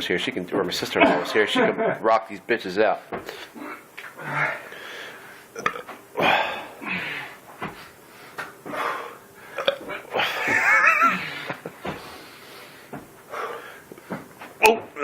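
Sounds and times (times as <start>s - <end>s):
man burping: 5.6s - 7.0s, 9.6s - 11.5s.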